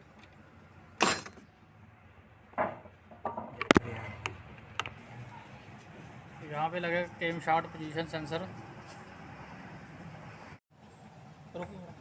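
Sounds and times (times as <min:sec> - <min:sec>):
metal clinks of tools: 0:01.0 - 0:01.4.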